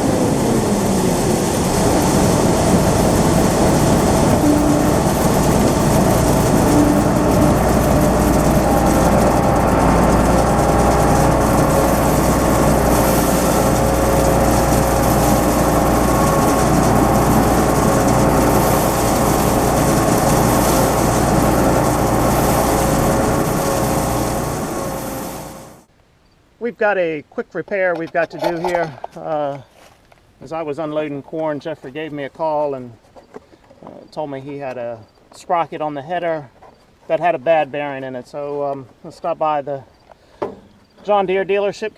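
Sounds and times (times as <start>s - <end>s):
diesel engine rumble: 0.0s - 25.9s
machinery whining tones: 0.0s - 25.9s.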